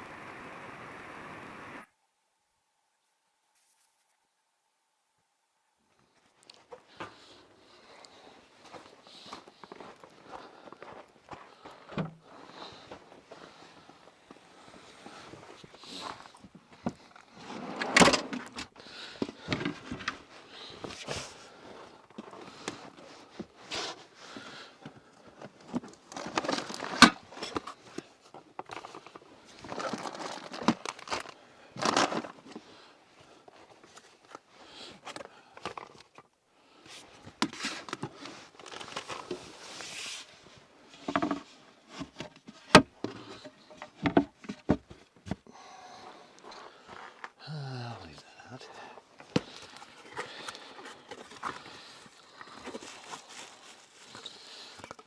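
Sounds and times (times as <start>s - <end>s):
rustling gear: 49.0s - 55.0s.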